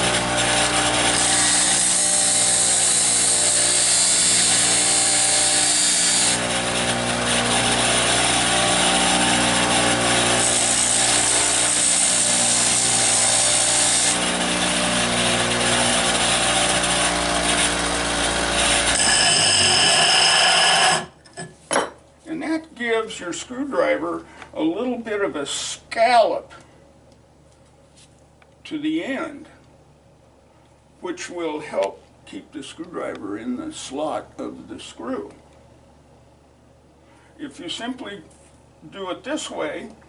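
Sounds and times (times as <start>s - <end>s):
bench grinder humming: 0.0s - 21.2s
high hissing grind of metal: 18.8s - 21.2s.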